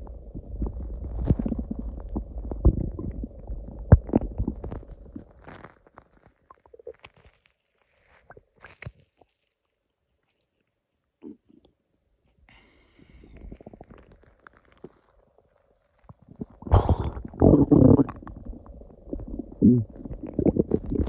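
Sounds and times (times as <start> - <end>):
stomach growling: 0.0 - 7.4, 13.0 - 21.0.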